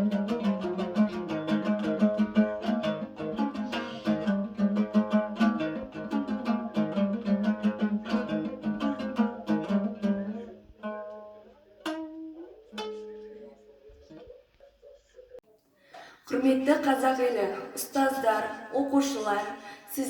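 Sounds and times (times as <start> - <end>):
plucked string instrument strumming: 0.0 - 14.6.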